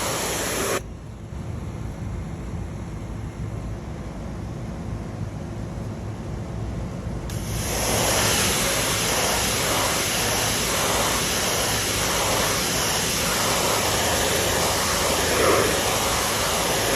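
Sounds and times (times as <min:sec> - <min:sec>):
pressure washer engine running: 0:00.0 - 0:00.8, 0:07.3 - 0:16.9
pressure washer spray hissing: 0:00.0 - 0:00.8, 0:07.3 - 0:16.9.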